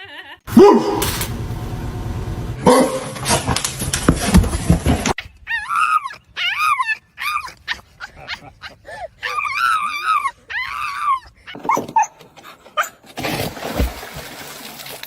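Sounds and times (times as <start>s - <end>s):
dog whining and yipping: 5.2s - 13.0s.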